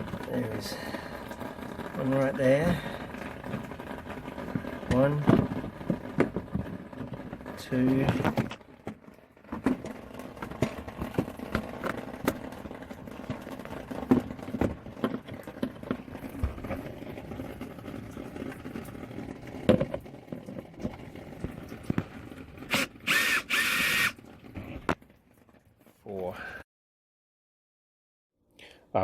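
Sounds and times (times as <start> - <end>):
power drill-driver whirring: 22.7 - 24.2.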